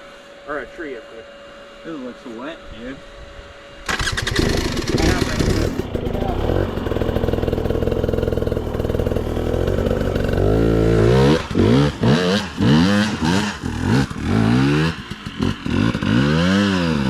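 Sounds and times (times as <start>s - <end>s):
dirt bike engine revving: 3.8s - 17.0s.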